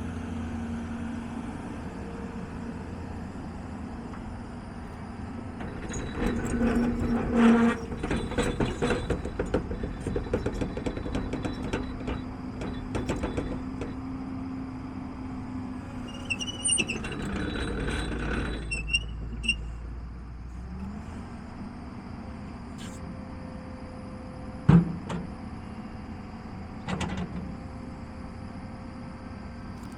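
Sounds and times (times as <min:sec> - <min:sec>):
excavator engine hum: 0:00.0 - 0:29.9
rattling clanks: 0:05.5 - 0:14.0
short high squeals: 0:15.9 - 0:19.8.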